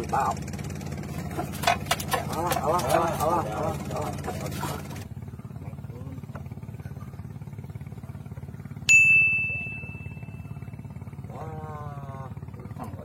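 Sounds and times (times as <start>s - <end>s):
steady low hum: 0.0s - 13.0s
sharp metallic ding: 8.9s - 10.8s.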